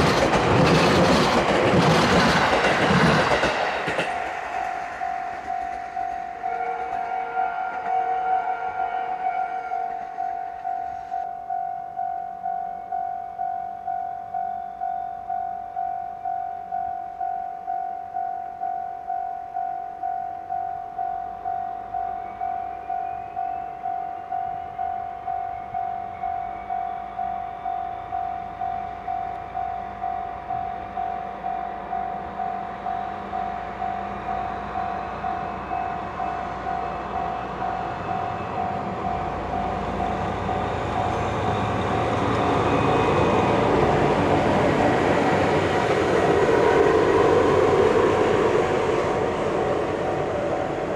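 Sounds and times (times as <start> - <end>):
train rumbling past: 0.0 - 16.3, 20.8 - 50.9
level-crossing bell ringing: 3.9 - 43.9.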